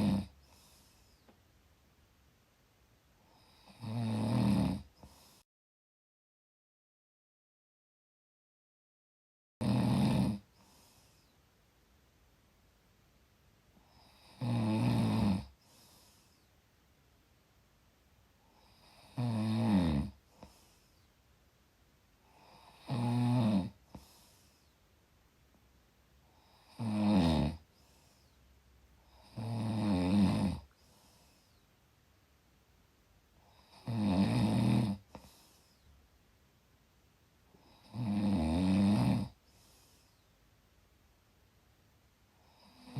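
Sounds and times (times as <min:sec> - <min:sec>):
person snoring: 0:00.0 - 0:01.3, 0:03.3 - 0:05.4, 0:09.6 - 0:11.3, 0:13.8 - 0:16.5, 0:18.5 - 0:21.0, 0:22.2 - 0:24.7, 0:26.3 - 0:28.3, 0:29.0 - 0:31.3, 0:33.4 - 0:35.8, 0:37.5 - 0:39.8, 0:42.4 - 0:42.9.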